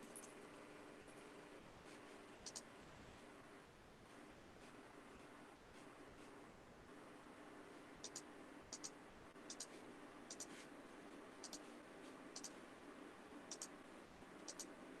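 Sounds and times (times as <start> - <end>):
low room hum: 0.0 - 15.0
computer mouse clicks: 2.4 - 2.7, 8.0 - 10.7, 11.4 - 12.6, 13.5 - 13.8, 14.4 - 14.8.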